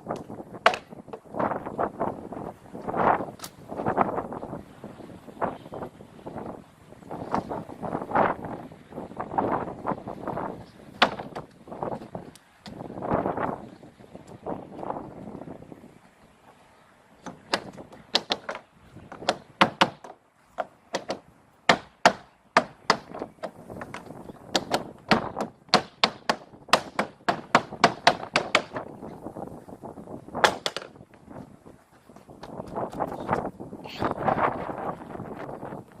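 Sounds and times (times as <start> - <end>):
hammer blows on wood: 17.2 - 28.9.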